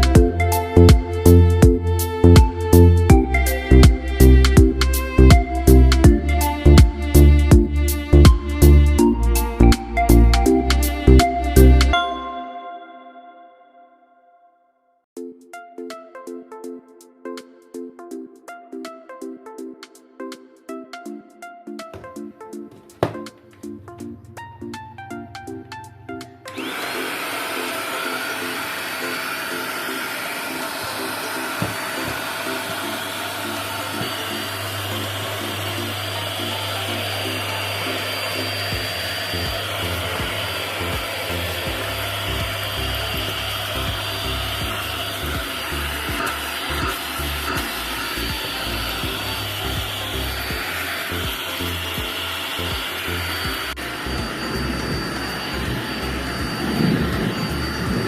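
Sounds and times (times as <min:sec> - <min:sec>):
stick vacuum cleaner running: 0:26.5 - 0:58.0.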